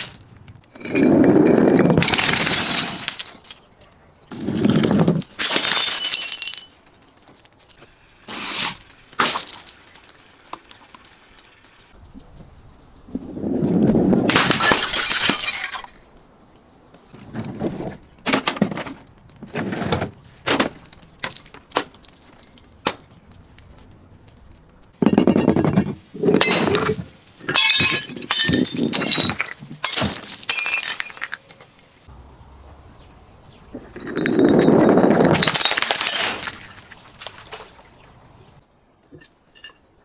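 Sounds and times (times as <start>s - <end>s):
glass crunching: 0.0s - 3.8s, 5.2s - 7.8s, 14.3s - 16.0s, 26.4s - 31.7s, 33.8s - 37.9s
glass cracks and clinks: 0.0s - 4.1s, 5.2s - 7.8s, 14.3s - 16.0s, 20.9s - 22.7s, 26.4s - 31.7s, 33.9s - 37.9s.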